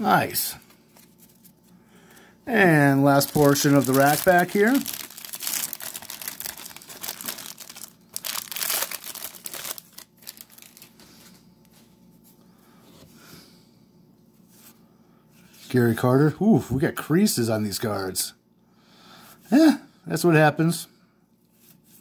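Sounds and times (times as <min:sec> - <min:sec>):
plastic wrapper tearing and crinkling: 0:02.9 - 0:11.1.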